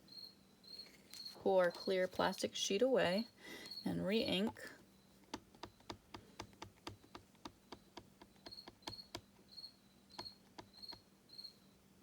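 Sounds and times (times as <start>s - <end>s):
rubber stamp tapping ink pad: 5.3s - 9.4s, 10.1s - 11.0s.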